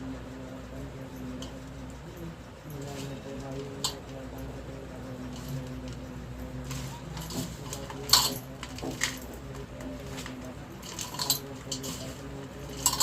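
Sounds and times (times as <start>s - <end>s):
steady low hum: 0.0s - 13.0s
utensils clinking: 7.2s - 9.6s, 10.2s - 13.0s.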